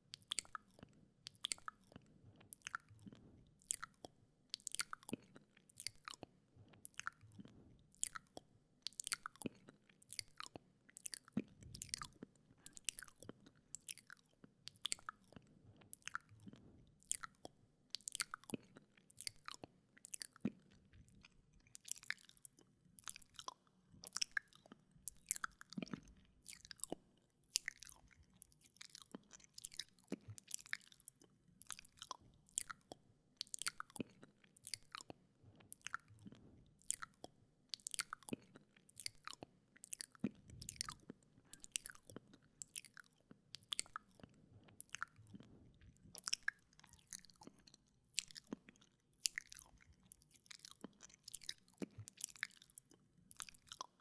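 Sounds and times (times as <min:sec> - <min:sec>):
tongue clicks: 0:39.0 - 0:45.5.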